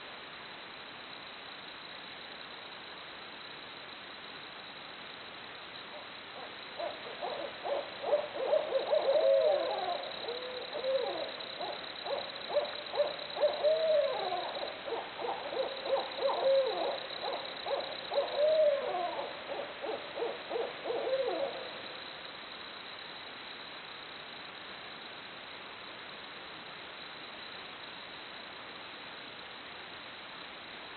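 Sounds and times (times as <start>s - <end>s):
owls hooting and wailing: 6.4s - 21.7s.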